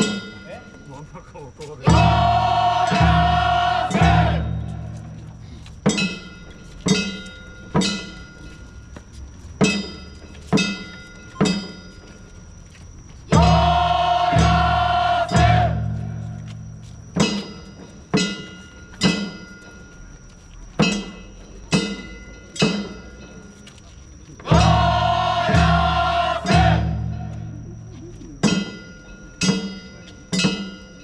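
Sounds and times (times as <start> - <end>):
ringing percussion hits: 0.0 - 9.0, 9.6 - 12.6, 13.2 - 23.7, 24.5 - 31.0
group of voices chanting: 1.8 - 4.9, 13.3 - 16.0, 24.4 - 27.4.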